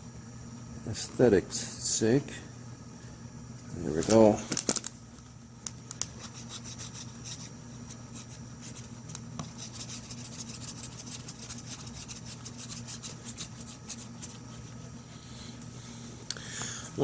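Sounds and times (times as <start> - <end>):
steady low hum: 0.0 - 17.0
tape being rubbed scratchy strokes: 6.2 - 8.9, 9.5 - 15.1.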